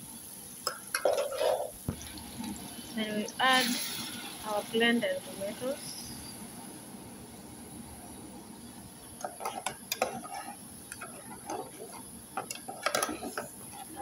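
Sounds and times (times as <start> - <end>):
utensil scraping and knocking on pot: 0.7 - 2.0, 9.2 - 14.0
spoon stirring stew in a pot: 9.2 - 14.0.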